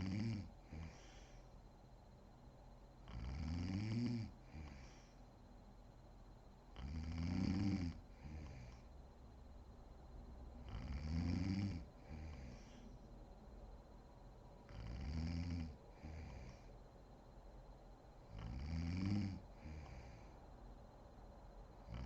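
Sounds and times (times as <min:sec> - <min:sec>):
woman snoring: 0:00.0 - 0:01.4, 0:03.1 - 0:05.1, 0:06.8 - 0:08.9, 0:10.6 - 0:12.8, 0:14.7 - 0:16.7, 0:18.3 - 0:20.4.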